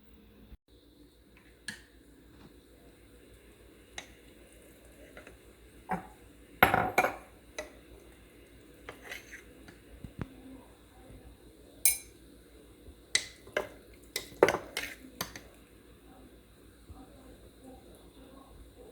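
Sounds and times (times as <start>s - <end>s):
kitchen utensils and dishes clinking: 4.9s - 7.8s, 8.6s - 9.8s, 11.8s - 12.2s, 13.1s - 15.6s.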